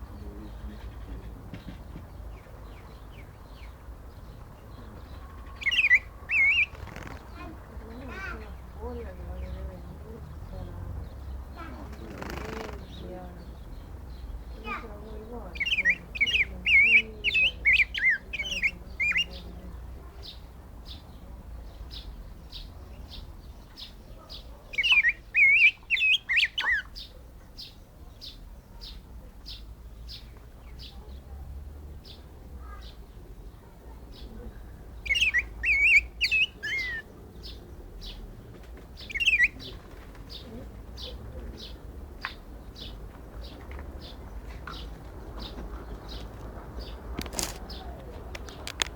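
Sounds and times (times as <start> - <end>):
bird warbled whistled song: 5.6 - 7.1, 24.7 - 27.0, 35.0 - 37.1, 39.0 - 39.8.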